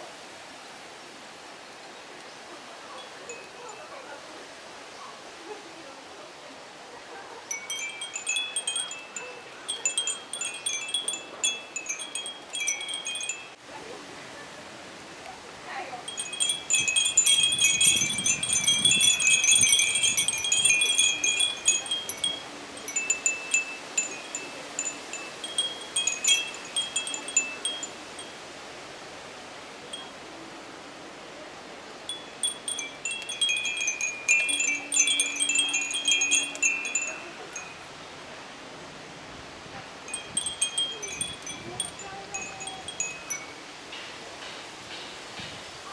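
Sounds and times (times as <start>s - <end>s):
wind bells tinkling: 3.0s - 4.0s, 7.5s - 13.6s, 16.0s - 28.4s, 29.7s - 30.2s, 32.0s - 38.0s, 40.1s - 44.0s.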